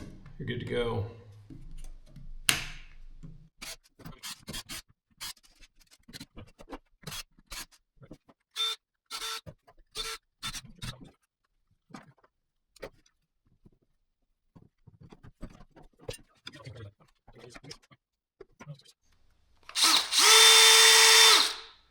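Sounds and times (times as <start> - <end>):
drill parts clicking and tapping: 19.6 - 21.8.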